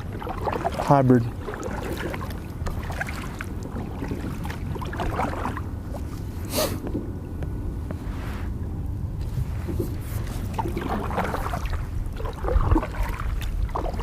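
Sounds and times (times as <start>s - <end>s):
water sloshing and splashing: 0.0s - 7.2s, 7.8s - 14.0s
steady low rumble: 0.0s - 14.0s.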